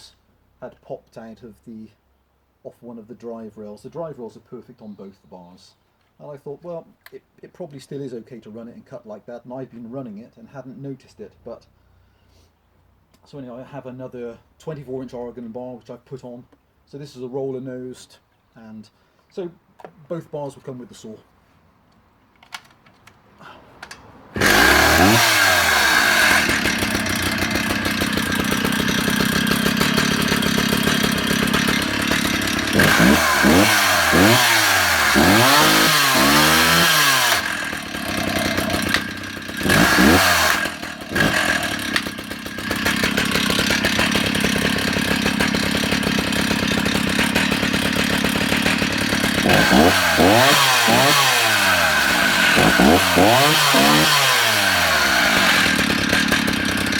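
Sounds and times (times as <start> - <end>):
chainsaw engine revving and idling: 24.3 - 56.9.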